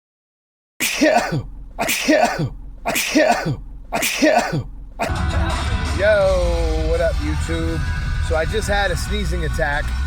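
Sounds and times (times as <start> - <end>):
person sneezing: 0.8 - 5.2
low rumble: 1.4 - 1.8, 2.4 - 10.0.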